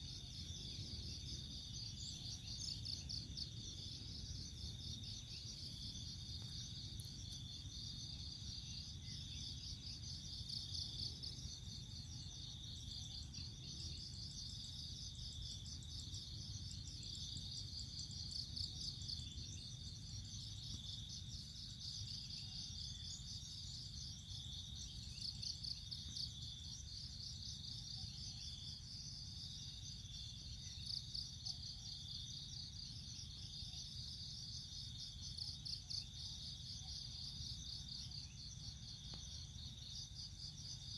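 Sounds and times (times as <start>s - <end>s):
crickets chirping: 0.0s - 40.9s.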